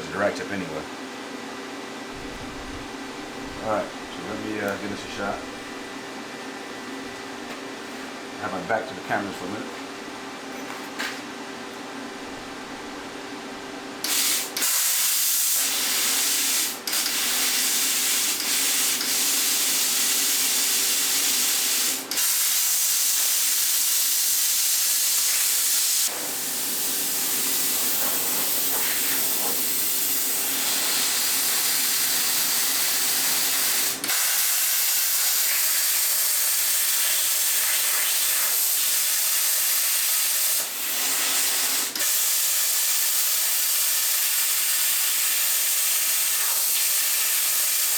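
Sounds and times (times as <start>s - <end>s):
plasma cutter hissing: 14.1s - 47.9s.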